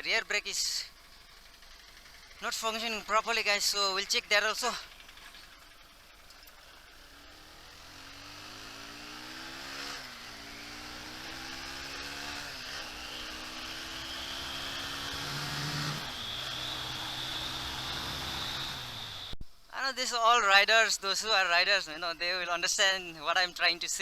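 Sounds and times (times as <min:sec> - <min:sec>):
motorcycle engine accelerating: 0:00.7 - 0:19.4.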